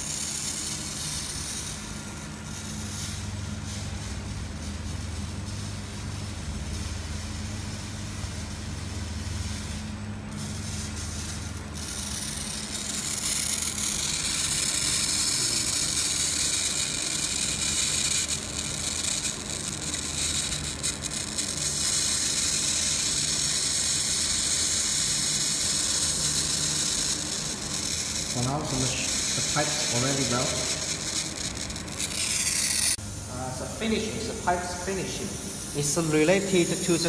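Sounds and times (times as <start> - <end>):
machine humming: 0.0 - 37.0
loud steady hiss: 21.6 - 37.0.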